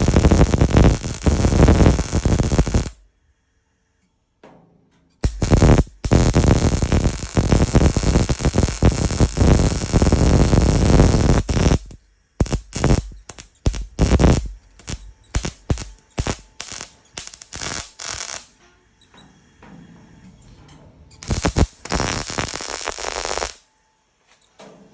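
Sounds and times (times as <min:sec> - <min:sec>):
welder crackling: 0:00.0 - 0:03.0, 0:05.2 - 0:18.6, 0:21.2 - 0:23.6.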